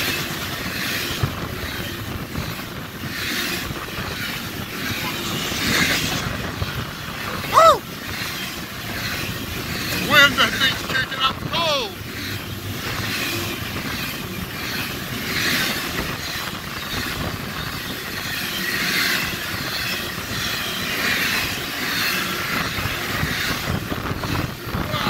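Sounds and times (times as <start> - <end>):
freight train cars passing: 0.0 - 25.0
steel wheels on rail: 0.0 - 25.0.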